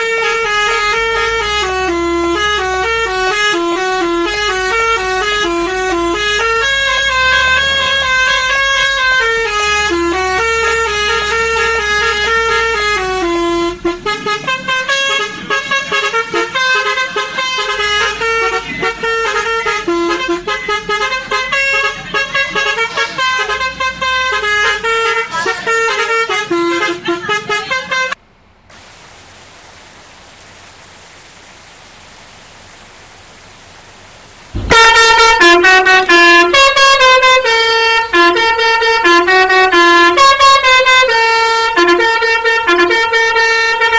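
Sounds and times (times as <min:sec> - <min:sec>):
bus air horn playing a tune: 0:00.0 - 0:28.2, 0:34.6 - 0:43.9
steady hiss: 0:28.7 - 0:35.9.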